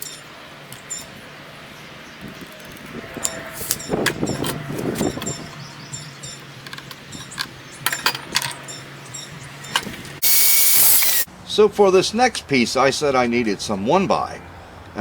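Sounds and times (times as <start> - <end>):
light clicks and clinks: 4.3 - 10.2.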